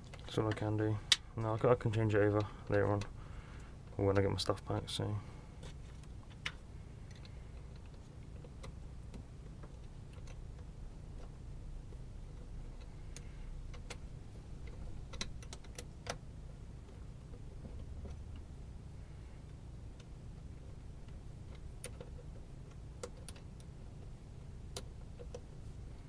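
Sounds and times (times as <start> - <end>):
low steady hum: 0.0 - 26.0
small hardware clicking and tapping: 19.4 - 25.5.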